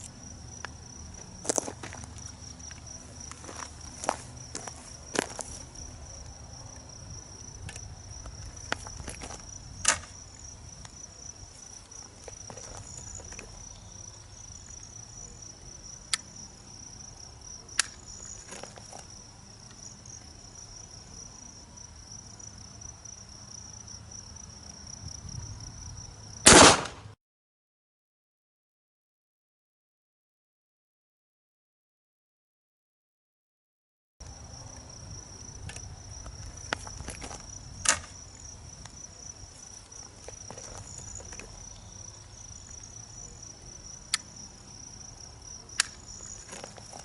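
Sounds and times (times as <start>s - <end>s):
insects chirping: 0.0s - 26.6s, 34.2s - 47.0s
loud shotgun shot: 26.4s - 27.2s.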